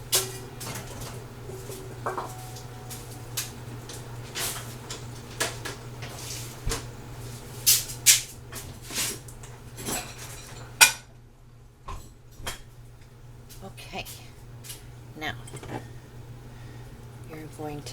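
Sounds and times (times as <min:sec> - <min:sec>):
dishes clattering: 0:00.0 - 0:06.2, 0:09.8 - 0:11.1, 0:15.3 - 0:15.9
steady low hum: 0:00.0 - 0:17.9.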